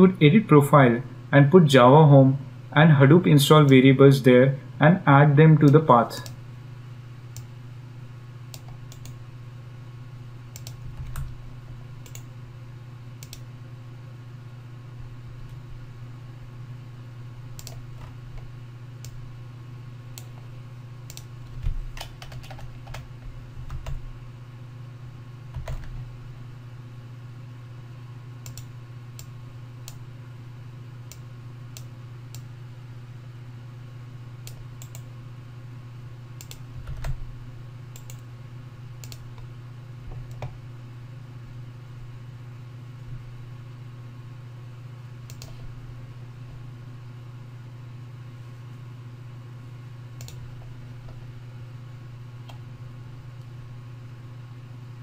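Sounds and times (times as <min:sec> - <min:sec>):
low electrical hum: 0:00.0 - 0:55.0
keyboard keystrokes and clicks: 0:10.5 - 0:11.4, 0:21.1 - 0:24.0, 0:28.4 - 0:30.0, 0:50.2 - 0:50.6.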